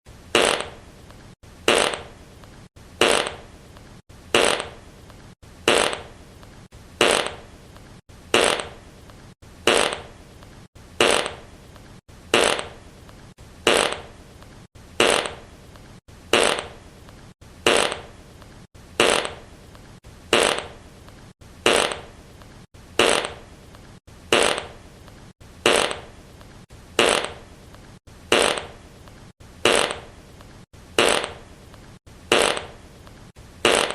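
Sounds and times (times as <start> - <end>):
fart sound effect: 0.3 - 0.8, 1.6 - 2.2, 3.0 - 3.5, 4.3 - 4.8, 5.6 - 6.1, 7.0 - 7.4, 8.3 - 8.8, 9.6 - 10.2, 11.0 - 11.4, 12.3 - 12.8, 13.6 - 14.1, 15.0 - 15.4, 16.3 - 16.8, 17.6 - 18.1, 19.0 - 19.4, 20.3 - 20.8, 21.6 - 22.1, 23.0 - 23.4, 24.3 - 24.8, 25.6 - 26.1, 27.0 - 27.4, 28.3 - 28.8, 29.6 - 30.1, 31.0 - 31.4, 32.3 - 32.8, 33.6 - 33.9.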